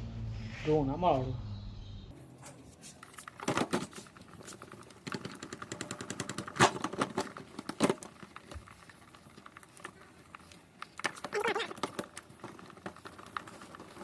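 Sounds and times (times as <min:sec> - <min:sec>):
small hard objects clicking: 0:04.2 - 0:14.0.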